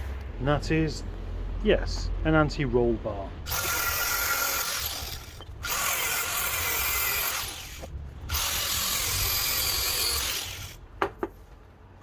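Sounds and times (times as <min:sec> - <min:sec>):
power tool cutting steel: 0:03.5 - 0:10.8.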